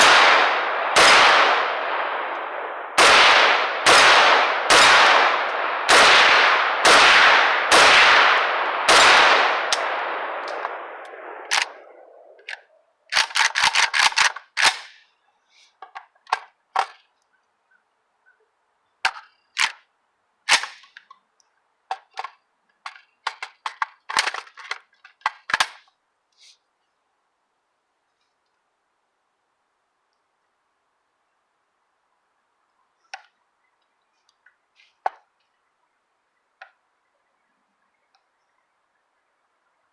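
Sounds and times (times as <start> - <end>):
sharp short gunshot cracks: 0.0 - 11.8
gunshots with echoing tails: 0.0 - 12.4.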